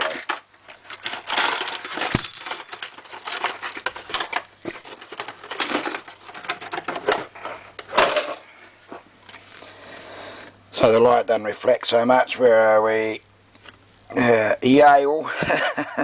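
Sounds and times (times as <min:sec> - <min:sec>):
metal lock parts clinking: 0:01.0 - 0:03.0.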